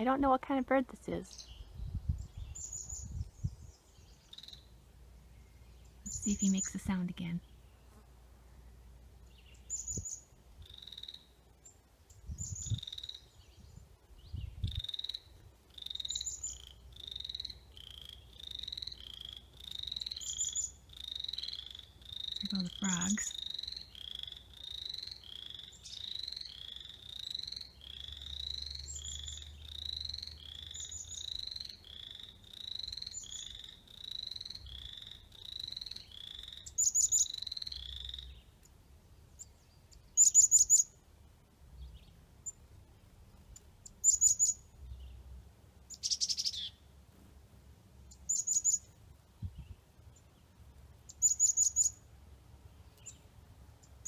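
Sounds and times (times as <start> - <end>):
bird chirping: 1.1 - 8.0, 8.6 - 41.0, 43.3 - 45.2, 45.9 - 46.9, 48.1 - 52.0, 52.7 - 54.0
frogs calling: 4.2 - 4.8, 9.7 - 11.5, 12.6 - 13.4, 14.6 - 38.4, 44.0 - 44.6, 51.1 - 52.0.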